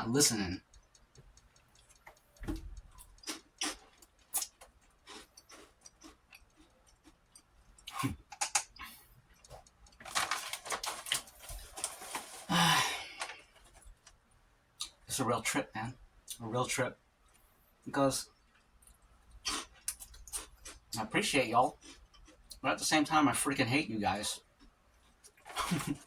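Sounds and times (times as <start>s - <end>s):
light clicks and ticks: 0.0s - 12.4s.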